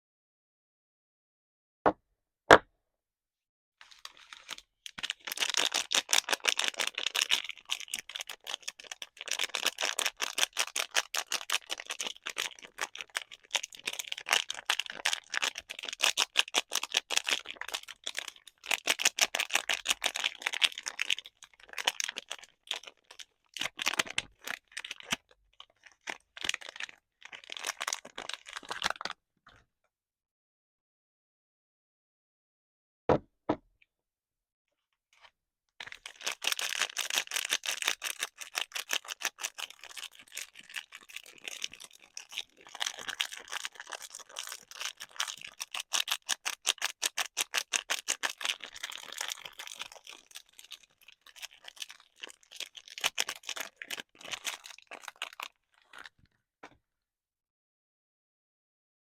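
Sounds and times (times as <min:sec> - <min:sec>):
packaging crinkling: 0:03.8 - 0:25.2, 0:25.8 - 0:29.1, 0:35.8 - 0:56.1.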